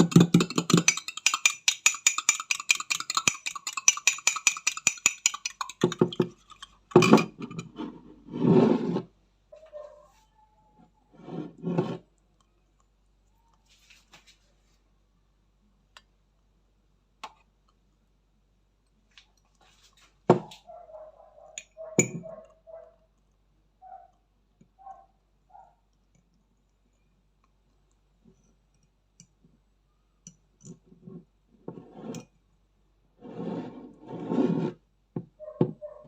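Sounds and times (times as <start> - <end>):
knocks and clatters: 0.0 - 7.5
utensil clinking against mug: 0.0 - 7.6, 22.0 - 22.2.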